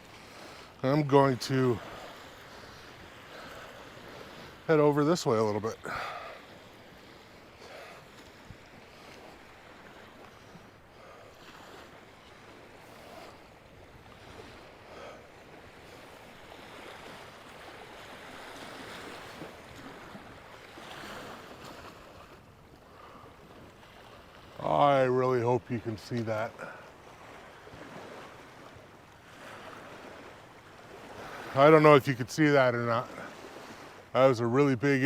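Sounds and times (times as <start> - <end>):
small waves washing on beach: 0.0 - 35.0
wind: 0.0 - 35.0.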